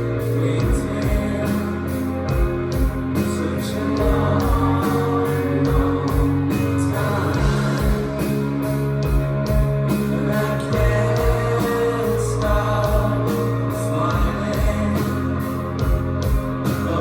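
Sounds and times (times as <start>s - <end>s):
person singing: 0.0s - 8.8s, 9.9s - 17.0s
drums with steady beat: 0.0s - 17.0s
electric guitar: 0.0s - 17.0s.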